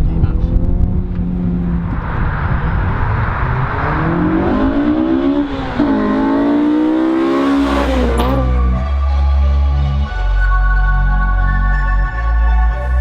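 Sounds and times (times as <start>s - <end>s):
car engine accelerating: 0.0s - 9.9s
music with deep bass: 7.3s - 13.0s.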